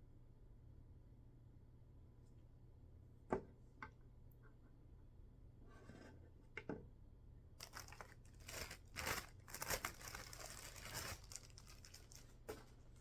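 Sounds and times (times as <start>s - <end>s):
packaging crinkling and rustling: 7.6s - 13.0s.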